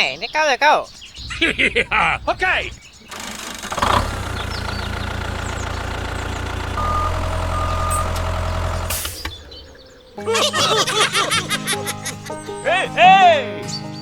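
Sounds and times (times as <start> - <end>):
vehicle engine running: 2.3 - 10.3
short high beeps: 6.8 - 8.3.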